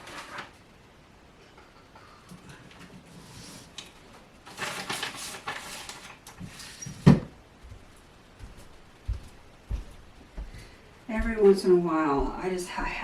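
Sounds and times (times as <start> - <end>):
papers rustling: 0.0 - 0.6, 2.6 - 6.8.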